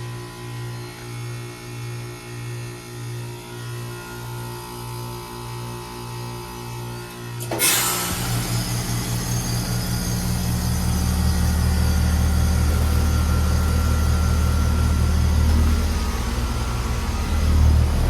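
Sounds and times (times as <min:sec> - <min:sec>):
heat pump humming: 0:07.4 - 0:18.0.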